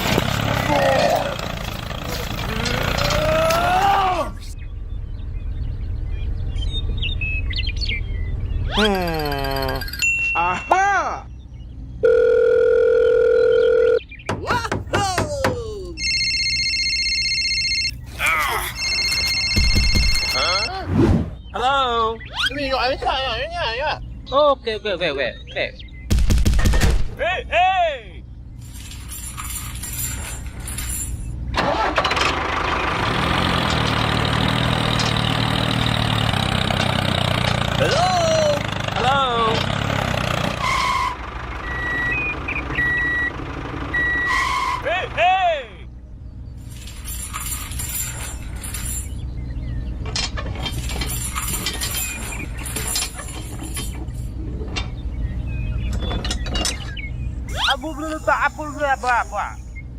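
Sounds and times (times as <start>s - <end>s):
small engine running: 0.0s - 3.6s
clinks: 28.6s - 31.4s, 46.6s - 49.3s, 50.0s - 55.0s.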